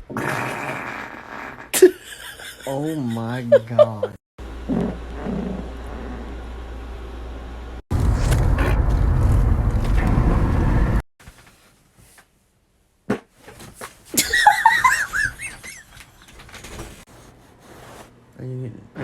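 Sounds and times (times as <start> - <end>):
long low fart: 0.0 - 1.8, 4.6 - 6.4, 7.9 - 11.0
high-pitched laughter: 14.2 - 16.0.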